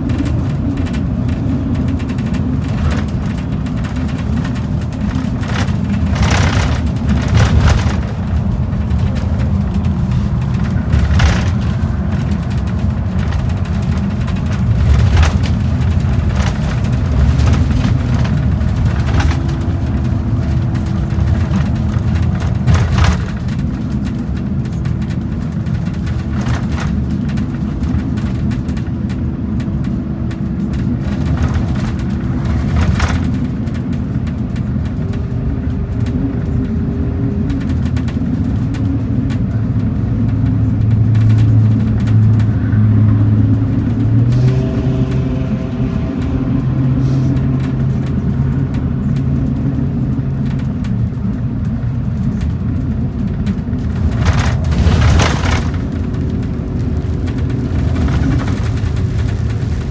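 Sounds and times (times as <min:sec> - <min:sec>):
rushes of noise: 0:00.0 - 0:28.8, 0:53.6 - 0:59.9
bus engine drone: 0:00.0 - 0:59.9
road noise: 0:00.0 - 0:59.9.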